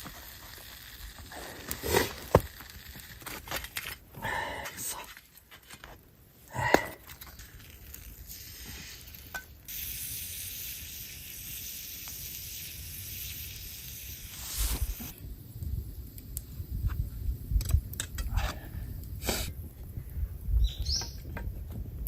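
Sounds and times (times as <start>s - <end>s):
meat sizzling on a pan: 0.0s - 1.6s, 7.4s - 15.8s.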